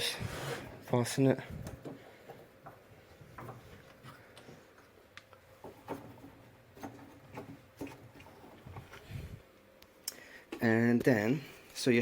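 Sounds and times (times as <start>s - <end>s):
wooden parts knocking and rubbing: 5.6s - 9.1s.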